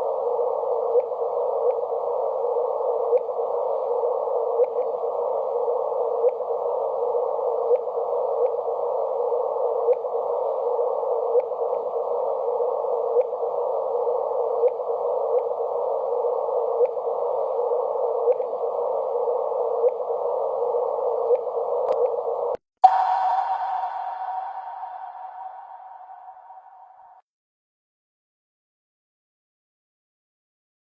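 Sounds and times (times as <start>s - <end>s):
static-like hiss: 0.0s - 27.0s
ringing pitched tone: 22.8s - 27.2s.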